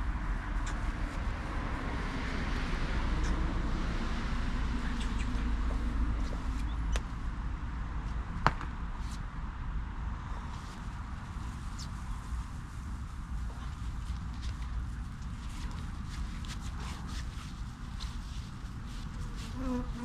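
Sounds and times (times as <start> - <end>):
low background rumble: 0.0 - 20.0.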